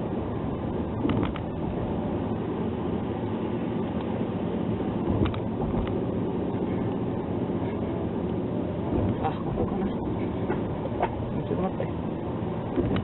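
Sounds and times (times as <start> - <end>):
car engine and road rumble: 0.0 - 13.0.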